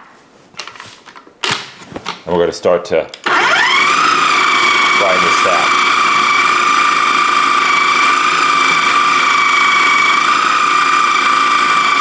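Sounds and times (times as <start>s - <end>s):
food processor motor whining: 3.2s - 12.0s.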